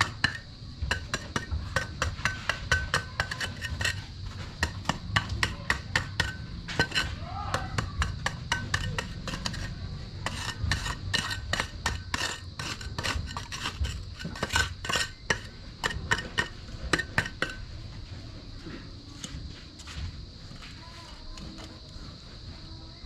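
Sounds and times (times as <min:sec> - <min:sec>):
metal tool scraping wet concrete: 0:00.0 - 0:17.8.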